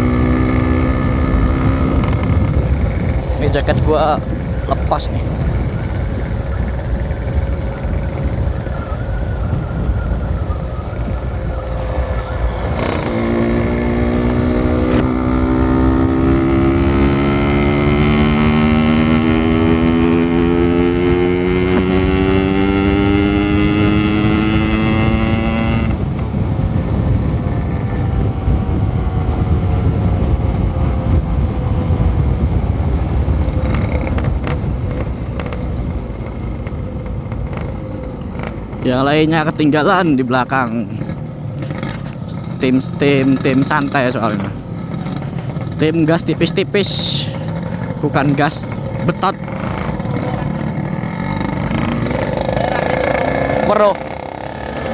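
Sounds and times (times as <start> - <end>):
wind noise on microphone: 0.0 - 39.5
two-stroke motorcycle engine: 0.0 - 54.9.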